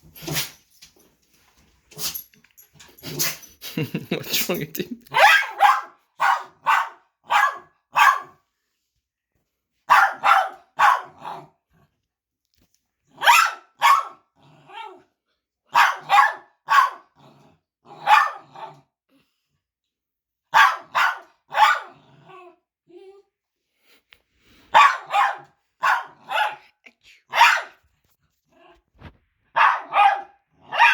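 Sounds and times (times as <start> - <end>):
dog sneezing: 0.2 - 0.6.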